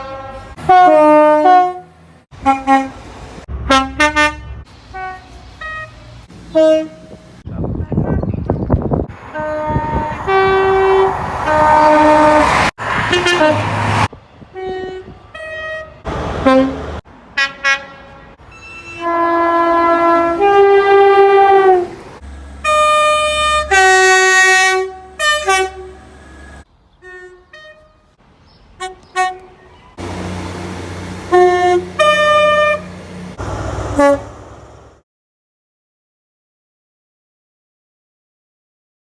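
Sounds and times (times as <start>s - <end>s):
two-tone train horn blasts: 0.0s - 3.0s, 3.6s - 7.3s, 9.2s - 22.0s, 22.6s - 28.1s, 28.8s - 33.2s, 33.9s - 34.4s
train running noise: 8.8s - 17.0s, 28.8s - 35.0s.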